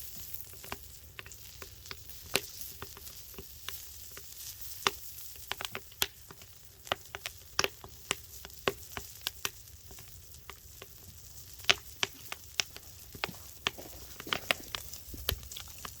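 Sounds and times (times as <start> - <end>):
faint hiss: 0.0 - 6.8
burning log popping and crackling: 0.0 - 16.0.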